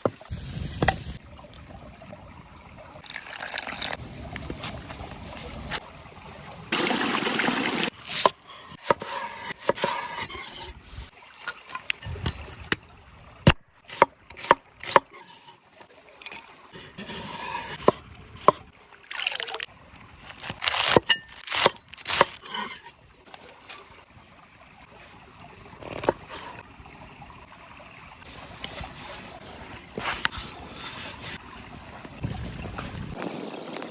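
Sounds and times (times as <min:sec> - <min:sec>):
rustling or scraping: 0:28.3 - 0:31.4.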